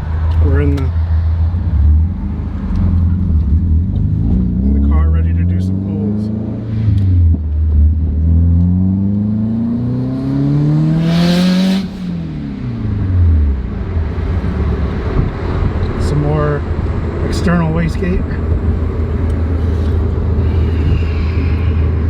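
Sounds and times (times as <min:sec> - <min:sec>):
car engine accelerating: 0:00.0 - 0:17.3.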